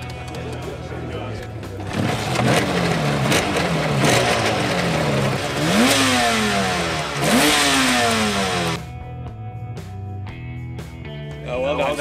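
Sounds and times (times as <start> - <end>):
motorcycle engine revving: 1.6 - 8.9.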